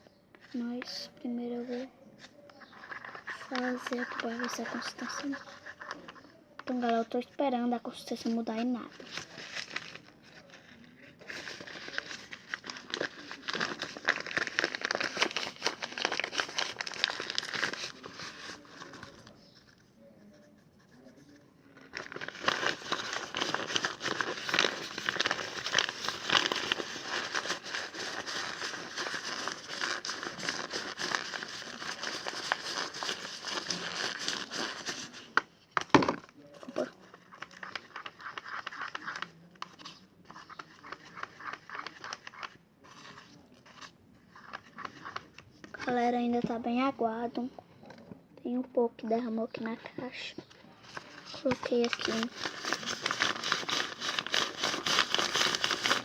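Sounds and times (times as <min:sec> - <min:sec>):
wet slime crackling while stirred: 0:02.6 - 0:07.2, 0:11.1 - 0:19.6, 0:21.9 - 0:42.6, 0:51.0 - 0:56.0.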